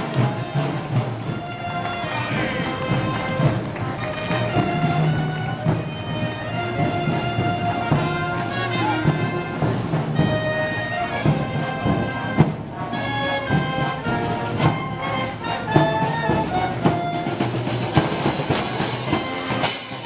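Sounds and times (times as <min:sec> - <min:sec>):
brass band playing: 0:00.0 - 0:20.0
cymbal crashes: 0:18.1 - 0:20.0.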